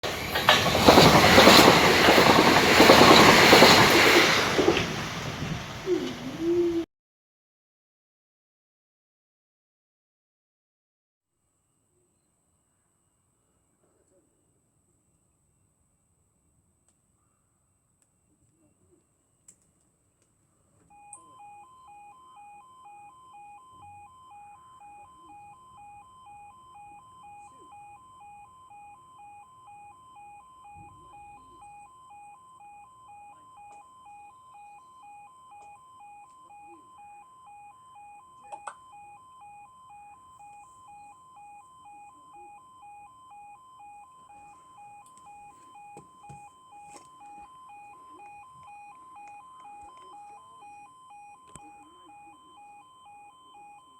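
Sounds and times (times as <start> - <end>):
two-tone level crossing alarm: 0.0 - 5.0, 20.9 - 53.9.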